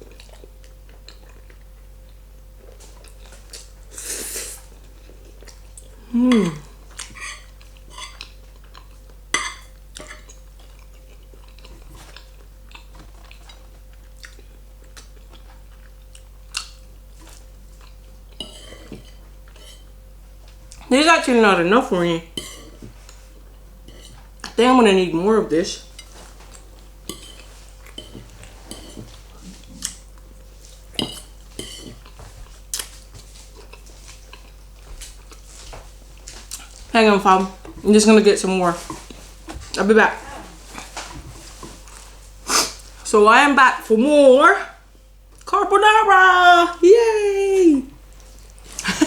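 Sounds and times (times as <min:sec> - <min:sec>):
person chewing: 0:00.0 - 0:09.2, 0:09.8 - 0:19.9, 0:25.8 - 0:36.9
fork clinking and scraping on plate: 0:27.1 - 0:29.2, 0:31.0 - 0:32.1.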